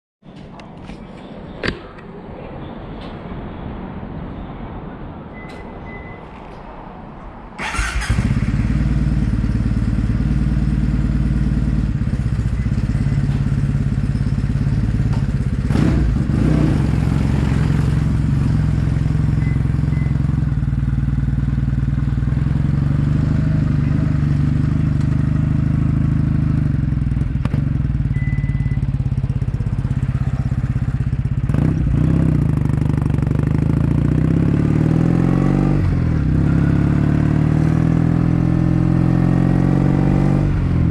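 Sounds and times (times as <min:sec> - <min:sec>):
motorcycle engine exhaust note: 0:15.2 - 0:33.7.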